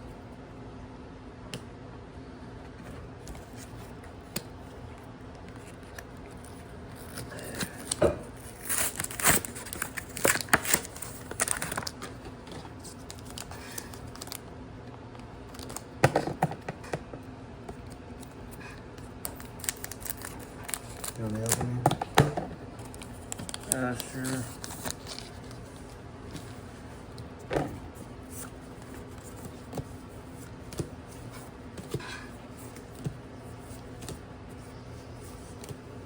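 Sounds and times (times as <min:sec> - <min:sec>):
packaging crackling and tearing: 0:05.6 - 0:14.5, 0:15.5 - 0:15.9, 0:19.2 - 0:21.8, 0:22.8 - 0:25.9.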